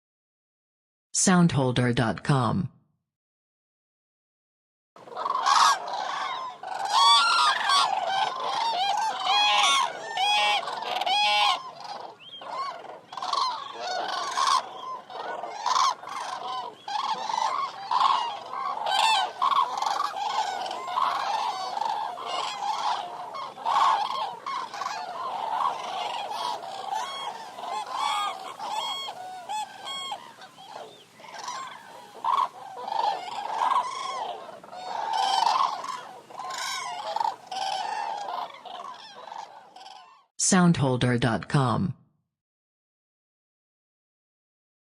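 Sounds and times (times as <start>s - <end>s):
cranes bugling calls: 5.0s - 40.2s.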